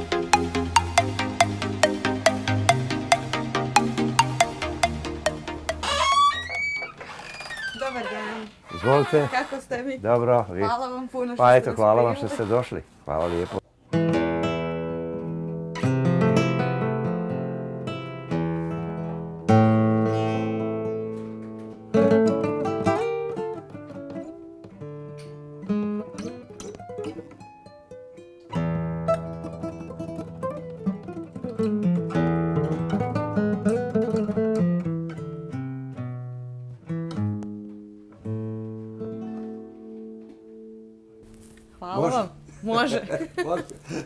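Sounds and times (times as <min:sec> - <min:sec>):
solo acoustic guitar: 0:13.9 - 0:42.8.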